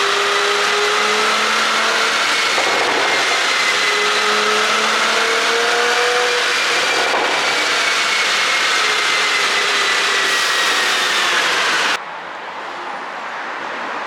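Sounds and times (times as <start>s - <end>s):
road and wind noise: 11.0s - 14.0s.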